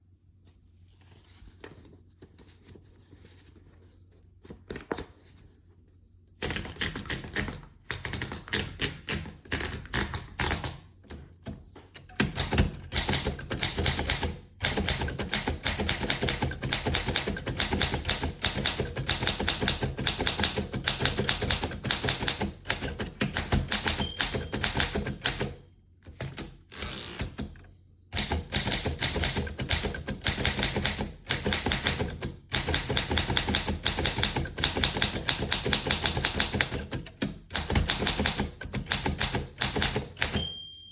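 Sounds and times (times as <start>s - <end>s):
manual typewriter key strikes: 11.4s - 25.6s, 28.2s - 40.8s.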